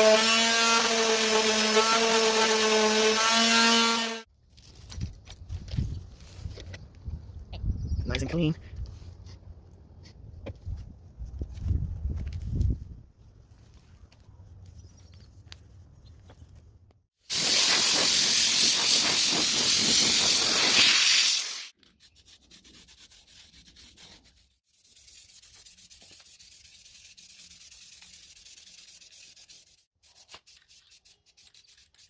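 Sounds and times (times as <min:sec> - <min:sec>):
sanding dashboard: 0:00.0 - 0:04.2, 0:21.4 - 0:32.0.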